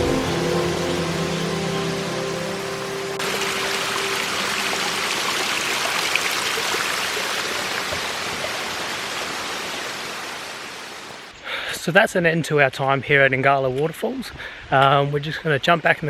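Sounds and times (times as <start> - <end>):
waterfall splashing: 0.0 - 11.3.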